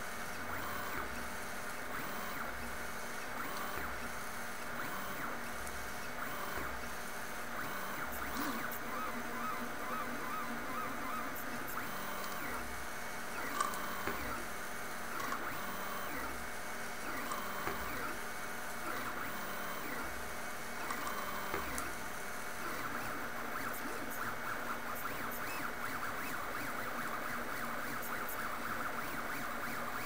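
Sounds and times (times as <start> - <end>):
stepper motors whining: 7.6 - 12.7.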